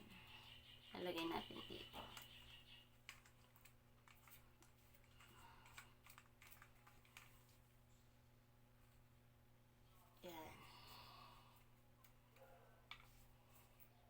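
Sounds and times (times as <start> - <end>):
faint steady hum: 0.0 - 14.0
plastic parts clicking and tapping: 2.0 - 7.4.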